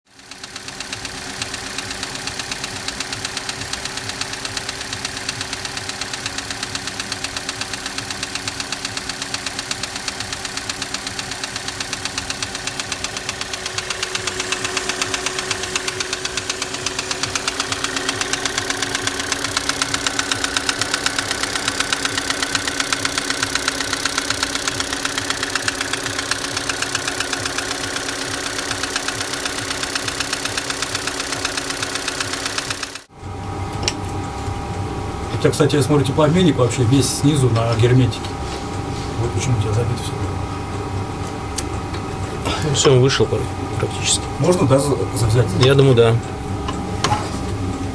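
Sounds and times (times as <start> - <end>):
petrol engine knocking: 0.1 - 33.1.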